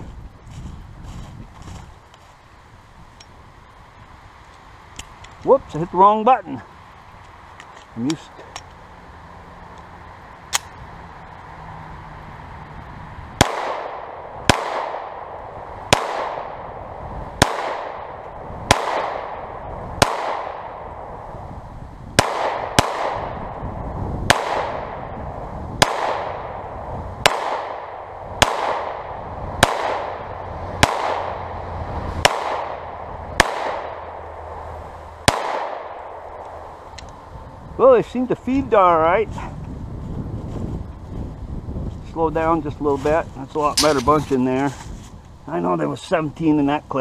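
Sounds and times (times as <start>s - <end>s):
pistol shots: 13.4s - 15.3s, 15.9s - 16.6s, 17.4s - 19.4s, 20.0s - 20.8s, 27.2s - 30.2s, 30.8s - 31.4s, 32.2s - 34.0s, 35.2s - 36.2s.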